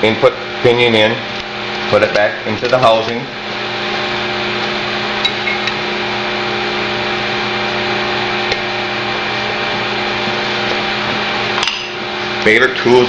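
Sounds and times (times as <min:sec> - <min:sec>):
machine hum with whooshing: 0:00.0 - 0:13.0.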